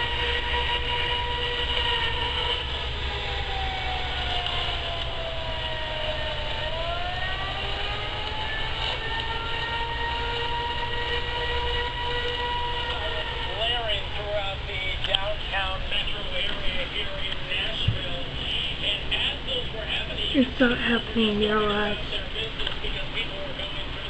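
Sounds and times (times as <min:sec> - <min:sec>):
warning siren wailing: 0:00.0 - 0:14.4, 0:20.4 - 0:22.2.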